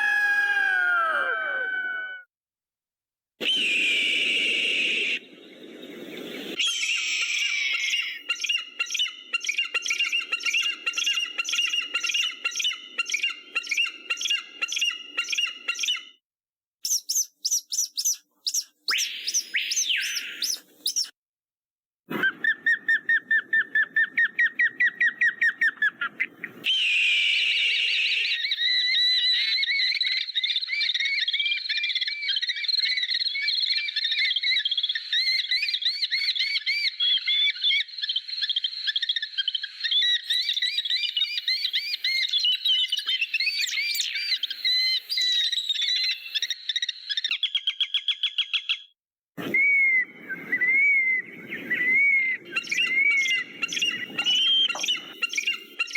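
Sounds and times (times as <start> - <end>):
eagle and hawk calls: 0.0 - 2.2, 3.4 - 5.3, 6.4 - 16.0, 16.9 - 21.1, 22.1 - 37.8, 49.4 - 55.9.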